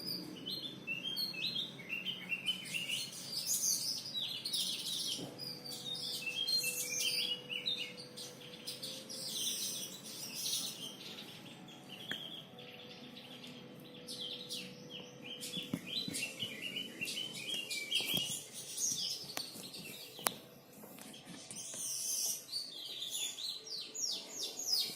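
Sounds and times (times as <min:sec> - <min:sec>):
bird chirping song: 0:00.0 - 0:24.9.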